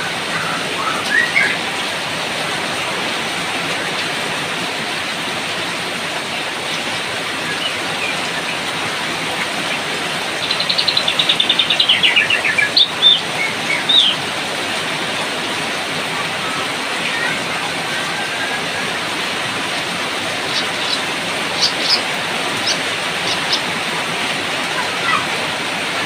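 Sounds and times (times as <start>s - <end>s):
steady rain hiss: 0.0s - 26.0s
bird singing: 0.3s - 1.6s, 10.4s - 14.2s, 20.4s - 23.7s.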